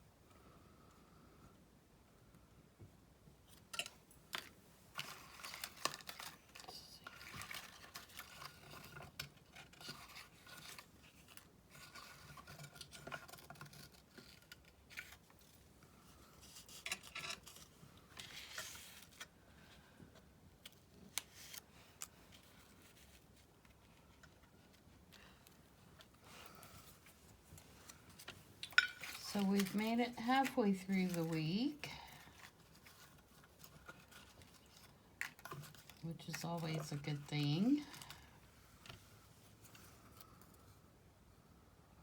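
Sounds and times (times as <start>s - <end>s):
paper rustling and crinkling: 4.3s - 40.8s.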